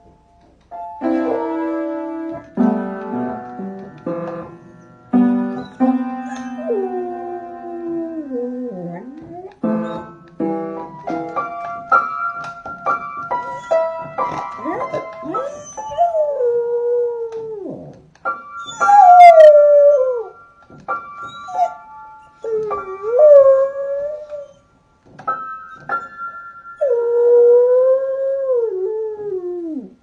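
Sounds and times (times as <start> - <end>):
piano notes: 0.0 - 30.0
puppy howling: 5.5 - 10.0.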